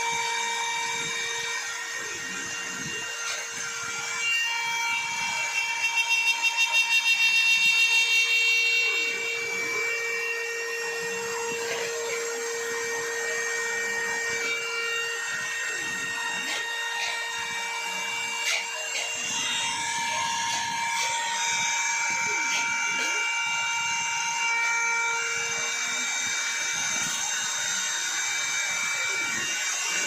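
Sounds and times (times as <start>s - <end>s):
router spindle whining: 0.0s - 30.0s.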